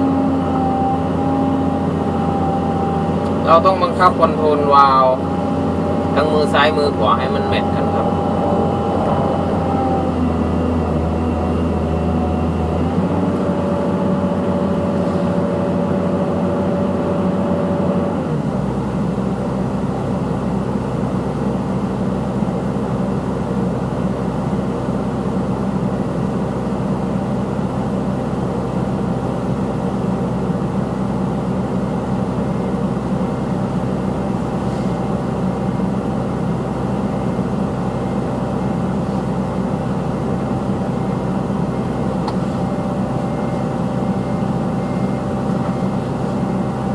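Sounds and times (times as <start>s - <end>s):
thin whine: 0.0s - 13.8s
excavator diesel engine running: 0.0s - 46.9s.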